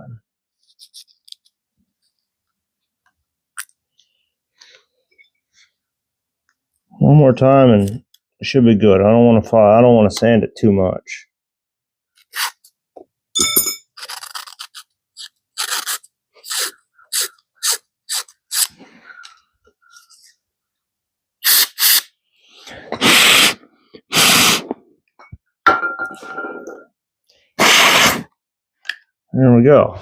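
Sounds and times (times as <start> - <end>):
sandpaper scraping metal: 14.0 - 18.7.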